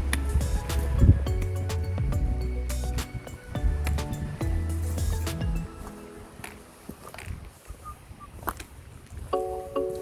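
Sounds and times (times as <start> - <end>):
chime-like struck notes: 0.0 - 6.2.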